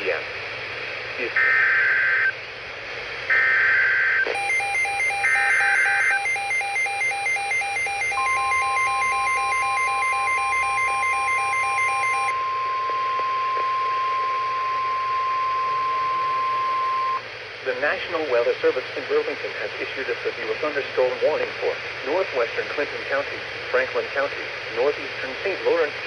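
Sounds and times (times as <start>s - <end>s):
steady warning alarm tone: 4.3s - 17.2s
screeching digital data bursts: 4.4s - 12.3s
rapid pulsing beep: 4.4s - 12.4s.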